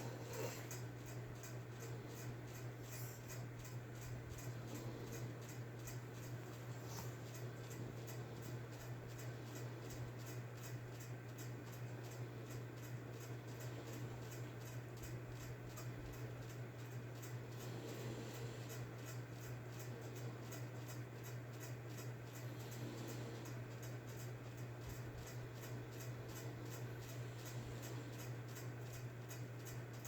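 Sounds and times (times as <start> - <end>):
person snoring faintly: 0.0 - 0.8
fast faint ticking: 0.0 - 30.0
steady low hum: 0.0 - 30.0.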